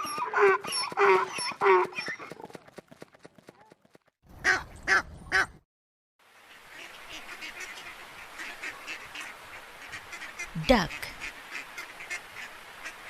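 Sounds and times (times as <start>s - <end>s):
ducks quacking: 6.5s - 13.0s.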